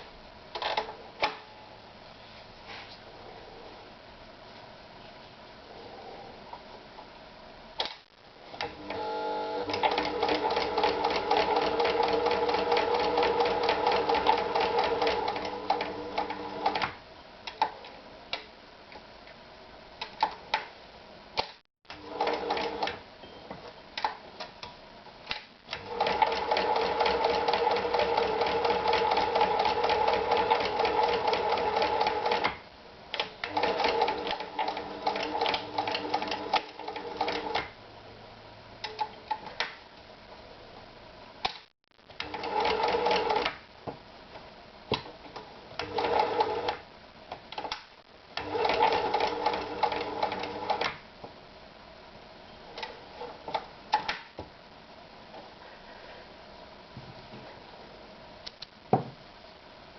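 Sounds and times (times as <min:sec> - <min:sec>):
sewing machine stitching: 0:08.7 - 0:16.9, 0:21.9 - 0:23.0, 0:25.7 - 0:32.6, 0:33.4 - 0:37.7, 0:42.2 - 0:43.5, 0:45.8 - 0:46.8, 0:48.4 - 0:51.0.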